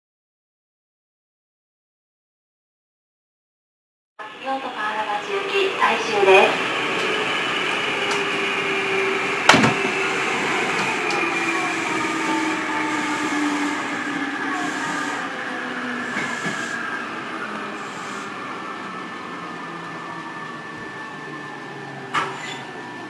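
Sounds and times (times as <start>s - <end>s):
train running noise inside car: 4.2s - 19.0s, 21.8s - 23.0s
sharp knock: 9.5s - 9.8s.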